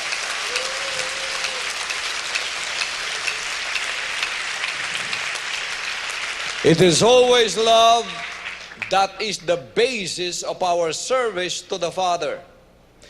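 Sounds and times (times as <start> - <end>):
crowd applauding: 0.0 - 9.4.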